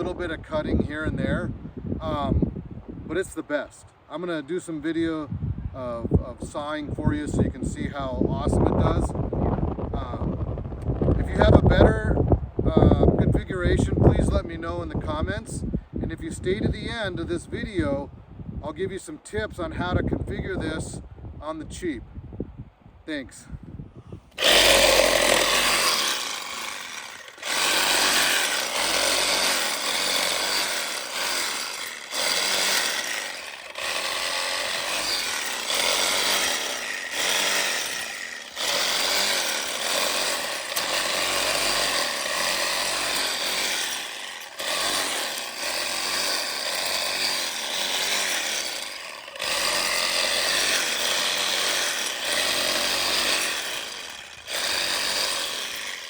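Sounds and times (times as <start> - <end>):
reciprocating saw cutting wood: 24.3 - 56.0.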